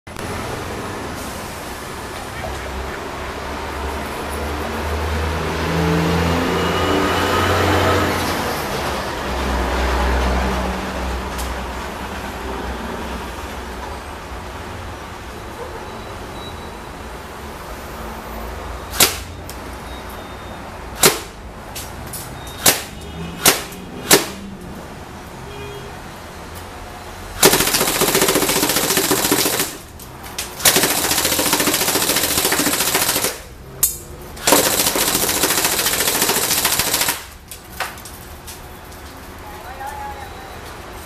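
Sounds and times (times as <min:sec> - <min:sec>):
airsoft gun single shots: 0:18.9 - 0:19.3, 0:21.0 - 0:21.4, 0:22.6 - 0:24.4
airsoft gun full-auto bursts: 0:27.4 - 0:29.9, 0:30.6 - 0:33.5, 0:34.4 - 0:37.4.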